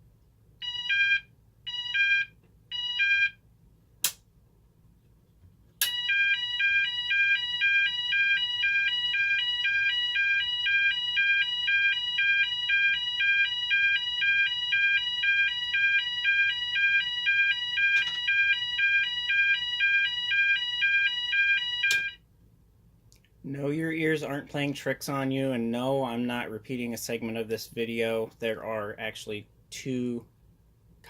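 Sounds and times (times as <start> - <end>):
fire alarm high-low tone: 0.6 - 3.4, 5.8 - 22.2
alarm switch click: 5.8 - 6.1, 21.8 - 22.2.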